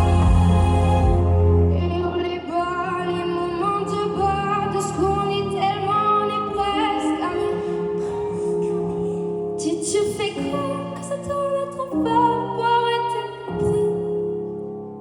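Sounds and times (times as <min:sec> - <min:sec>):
instrumental accompaniment: 0:00.0 - 0:06.0
woman singing: 0:01.7 - 0:14.4.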